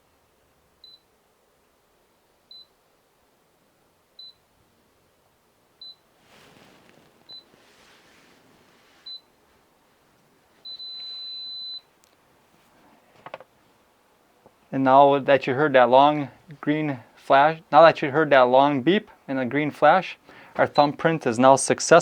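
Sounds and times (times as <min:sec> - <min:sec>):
long beep: 0:10.7 - 0:11.9
short high beeps: 0:10.7 - 0:11.9.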